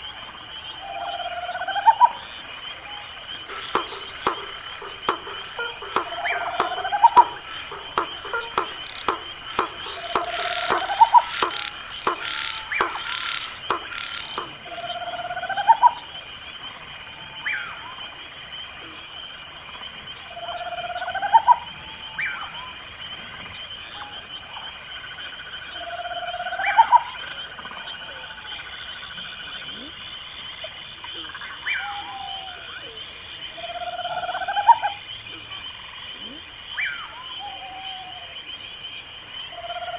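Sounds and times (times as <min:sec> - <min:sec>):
crickets trilling: 0:00.0 - 0:39.9
faint high ticks: 0:02.9 - 0:15.0.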